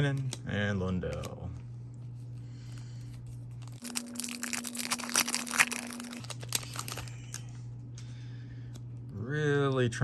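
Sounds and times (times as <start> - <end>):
foil wrapper crinkling: 2.8 - 7.5.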